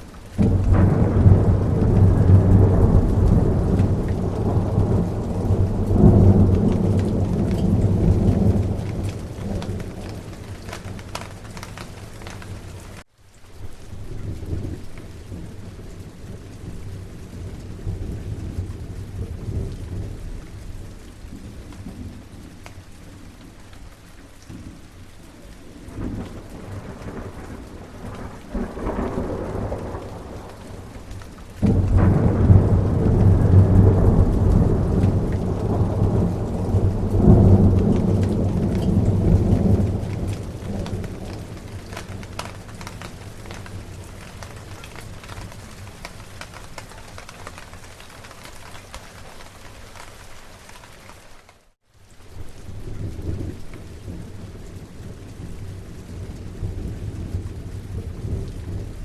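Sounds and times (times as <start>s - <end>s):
rolling thunder: 0.0s - 13.0s, 25.7s - 47.8s
steady rain: 0.0s - 59.0s
loud thunderclap: 0.4s - 12.7s, 25.9s - 47.2s.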